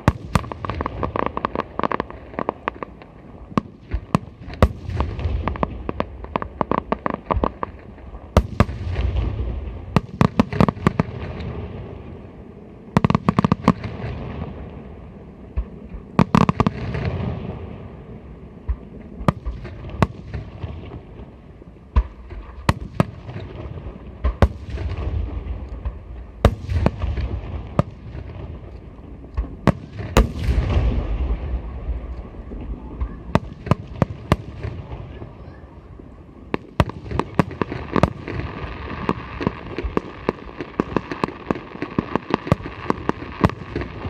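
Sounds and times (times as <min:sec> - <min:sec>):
firework bangs: 0:00.0 - 0:12.2, 0:15.5 - 0:44.0
low rolling rumble: 0:17.2 - 0:36.6.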